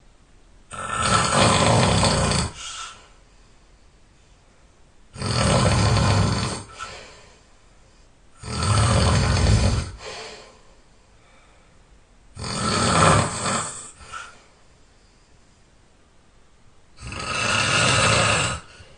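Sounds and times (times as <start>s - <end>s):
person snoring loudly: 0.7s - 3.0s, 5.1s - 7.1s, 8.4s - 10.3s, 12.4s - 14.4s, 17.0s - 18.9s
quiet breathing: 0.8s - 16.1s, 17.6s - 18.9s.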